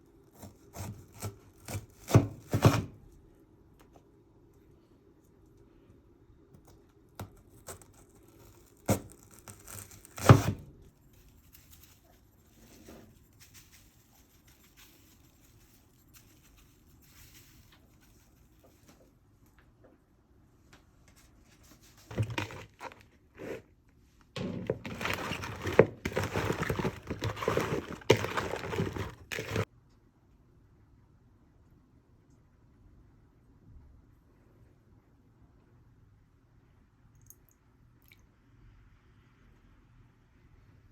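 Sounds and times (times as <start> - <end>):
rustling and crinkling: 7.6 - 29.7.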